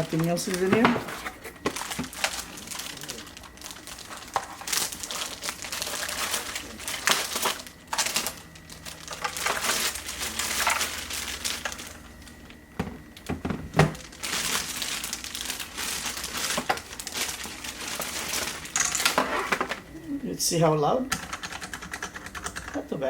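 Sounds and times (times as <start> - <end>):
packaging crinkling and rustling: 0.0 - 20.0.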